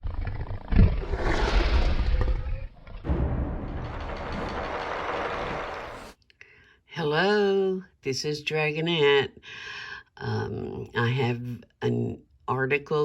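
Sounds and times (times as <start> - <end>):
boom: 0.8 - 6.1
heavy rumbling noise: 1.9 - 6.1.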